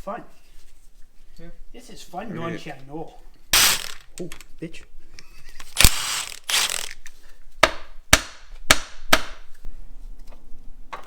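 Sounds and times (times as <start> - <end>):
metal scraping: 3.6 - 4.5.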